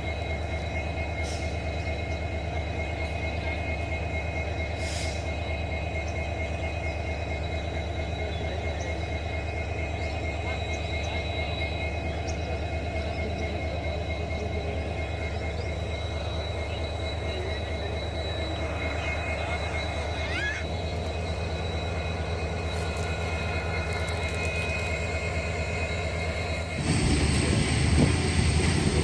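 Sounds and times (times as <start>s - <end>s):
train rumbling along track: 0.0s - 29.0s.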